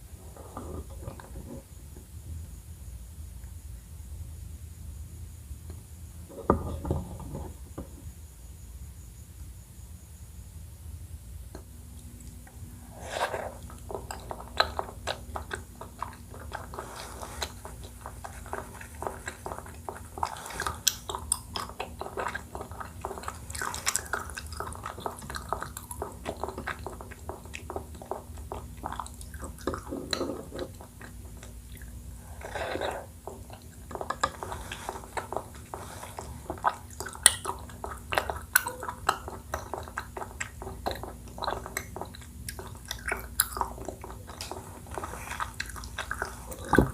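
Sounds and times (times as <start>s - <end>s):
chewing and slurping: 12.2s - 46.9s
wet smacks and clicks: 33.3s - 46.9s.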